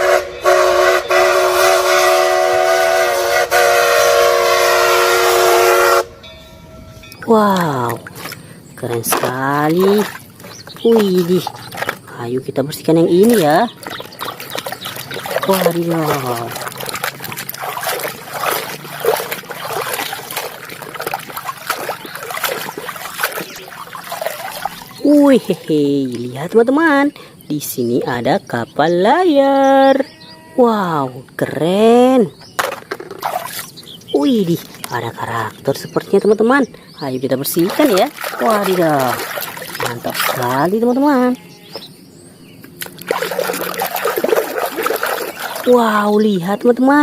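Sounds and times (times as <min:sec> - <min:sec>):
train horn chord: 0:00.0 - 0:07.2
water trickling and splashing: 0:07.0 - 0:28.5, 0:32.3 - 0:42.0, 0:42.6 - 0:47.0
scrubbing a toy: 0:07.5 - 0:12.1, 0:12.8 - 0:25.6, 0:37.5 - 0:40.9, 0:42.8 - 0:46.0.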